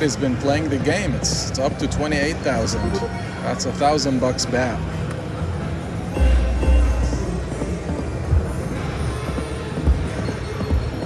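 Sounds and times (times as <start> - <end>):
slot machine game music: 2.6 - 3.6, 6.0 - 10.6.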